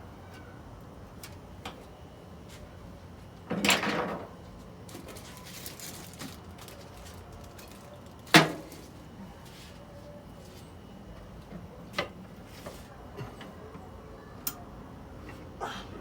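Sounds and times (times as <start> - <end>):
scraping clatter of hard objects: 4.9 - 9.0.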